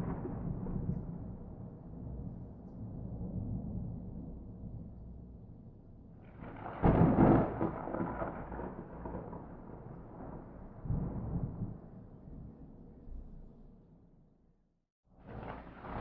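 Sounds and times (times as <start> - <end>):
thunder rumbling and booming: 0.0 - 2.3, 6.4 - 12.4, 15.2 - 16.0.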